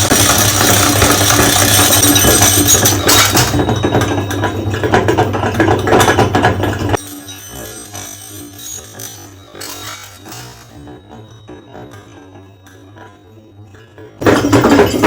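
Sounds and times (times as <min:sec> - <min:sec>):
meat grinder motor running: 0:00.0 - 0:11.2
marbles clattering against auger: 0:00.0 - 0:12.2, 0:14.2 - 0:15.0.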